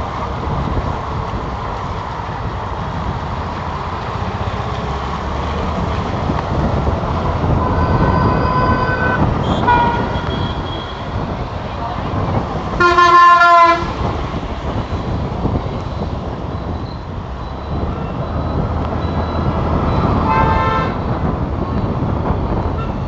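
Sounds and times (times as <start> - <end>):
horn sounding: 7.4 - 11.1, 12.8 - 14.0, 20.0 - 21.1.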